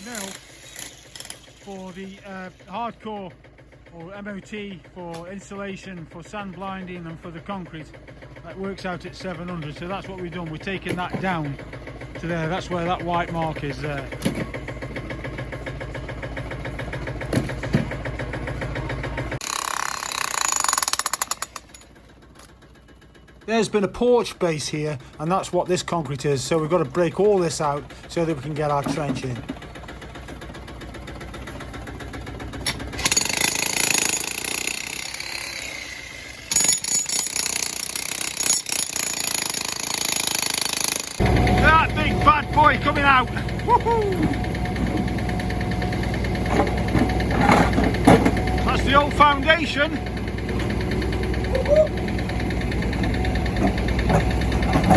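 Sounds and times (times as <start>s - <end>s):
digger engine running: 0.0s - 54.9s
rapid hammering: 36.5s - 54.9s
bucket scraping concrete: 46.0s - 50.0s, 53.0s - 54.9s.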